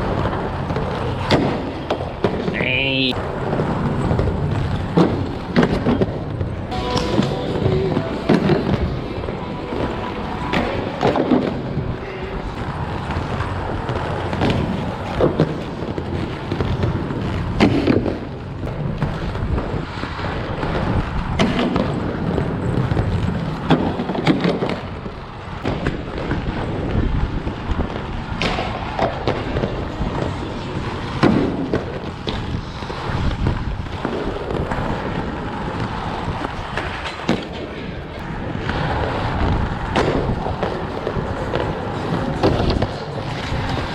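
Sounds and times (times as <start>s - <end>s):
skate wheels rolling on pavement: 0.0s - 43.9s
skates clacking on grind rail: 0.0s - 43.9s.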